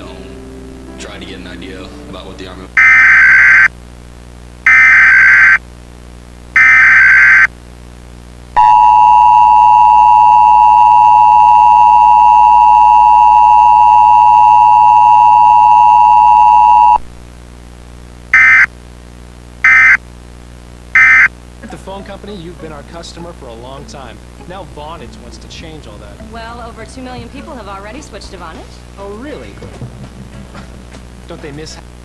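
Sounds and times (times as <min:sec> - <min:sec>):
digital data header bursts: 0:02.8 - 0:03.7, 0:04.7 - 0:05.6, 0:06.6 - 0:07.5, 0:18.4 - 0:18.7, 0:19.6 - 0:20.0, 0:21.0 - 0:21.3
short data bursts: 0:02.8 - 0:03.7, 0:04.7 - 0:05.6, 0:06.6 - 0:07.5, 0:18.3 - 0:18.7, 0:19.6 - 0:20.0, 0:21.0 - 0:21.4
two-tone attention signal: 0:08.6 - 0:17.0, 0:21.0 - 0:21.3.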